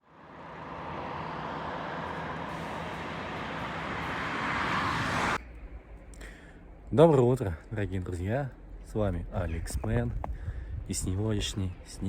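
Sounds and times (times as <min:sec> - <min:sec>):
outdoor street noise: 0:00.0 - 0:12.0.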